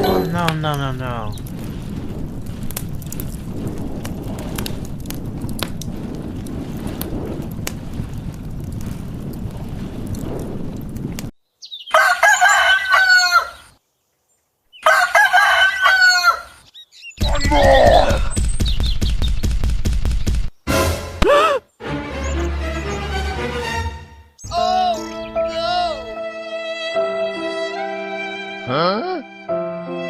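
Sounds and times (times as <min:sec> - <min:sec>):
rooster crowing: 0:11.9 - 0:13.7, 0:14.8 - 0:16.6.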